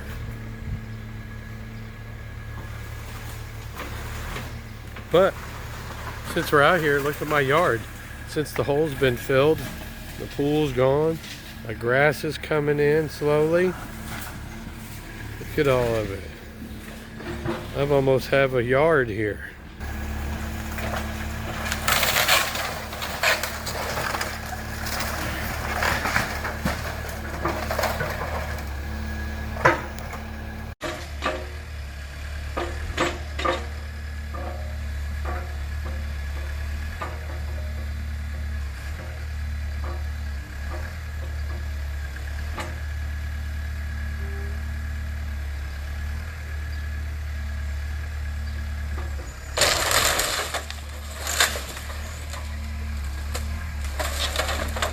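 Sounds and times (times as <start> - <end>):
demolition machine engine running: 0.0 - 54.9
wood framing cracking and snapping: 2.7 - 18.5, 19.8 - 31.6, 49.0 - 54.9.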